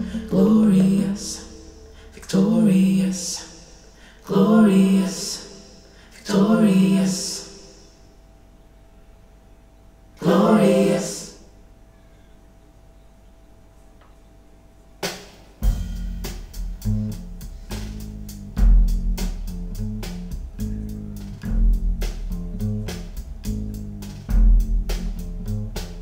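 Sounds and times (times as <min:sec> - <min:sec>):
faint hiss: 0:00.0 - 0:12.4, 0:15.0 - 0:26.0
deep bass groove: 0:15.6 - 0:26.0
jazz band over loudspeakers: 0:15.6 - 0:26.0
drum hit: 0:18.6 - 0:20.5, 0:21.4 - 0:25.3.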